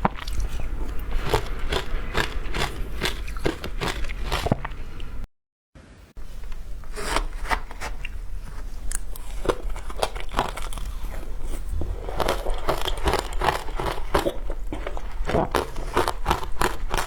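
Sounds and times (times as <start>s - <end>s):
ice crunching in mouth: 0.0s - 4.8s, 8.9s - 17.0s.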